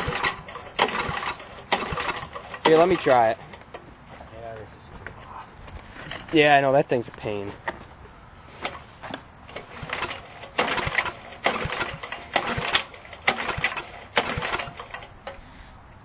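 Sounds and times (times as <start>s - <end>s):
recoil pull-starter pulled: 0.0s - 3.7s, 8.6s - 15.4s
engine cranking in rattling bursts: 0.0s - 3.8s, 8.6s - 15.4s.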